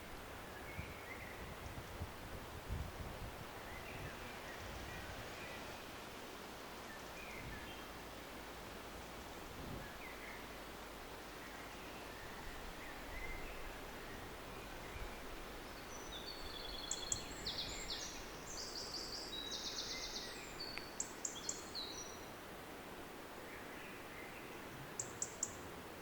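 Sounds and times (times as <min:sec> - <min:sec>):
outdoor ambience hiss: 0:00.0 - 0:26.0
songbird trilling song: 0:11.2 - 0:22.4, 0:23.4 - 0:25.7.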